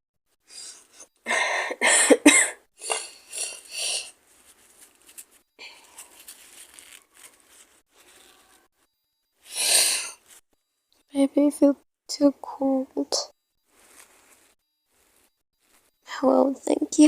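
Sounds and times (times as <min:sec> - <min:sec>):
faint breathing: 0:00.5 - 0:02.1, 0:02.8 - 0:04.2, 0:05.5 - 0:06.7, 0:09.4 - 0:10.3
woman coughing: 0:01.6 - 0:03.6.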